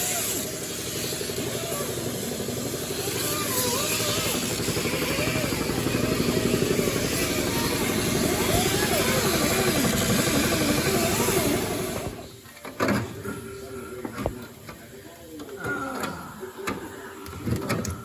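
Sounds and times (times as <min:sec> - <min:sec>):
motor running with fast pulse: 0:00.0 - 0:12.3
voices: 0:00.0 - 0:18.0.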